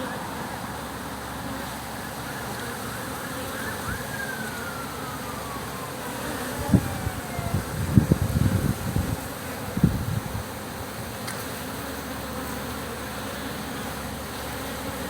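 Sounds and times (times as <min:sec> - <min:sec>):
bees flying past whines: 0:00.0 - 0:15.0
honeybees buzzing: 0:00.0 - 0:15.0
long falling whine: 0:01.8 - 0:09.0.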